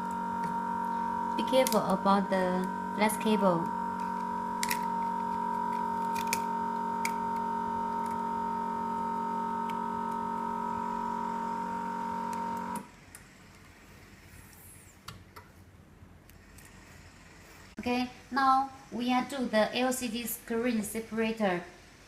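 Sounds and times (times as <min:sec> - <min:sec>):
vacuum pump humming: 0:00.0 - 0:12.9.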